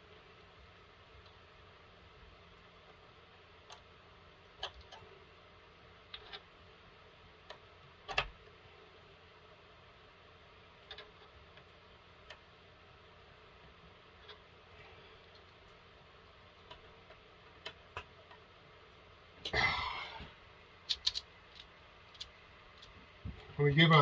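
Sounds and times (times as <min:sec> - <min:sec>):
faint room hiss: 0:00.0 - 0:24.0
small hard objects clicking: 0:20.8 - 0:23.0.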